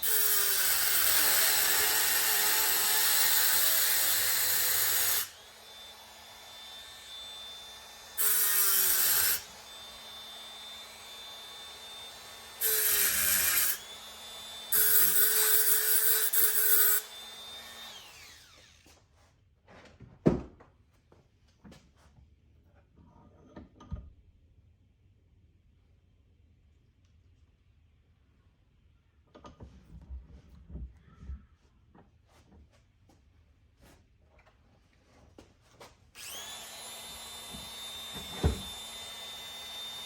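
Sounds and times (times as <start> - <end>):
cutting wheel whining: 36.2 - 40.0.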